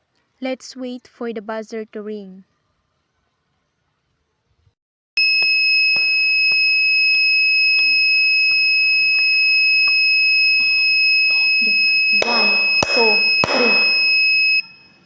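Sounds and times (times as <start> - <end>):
alarm clock buzzer: 5.2 - 15.0.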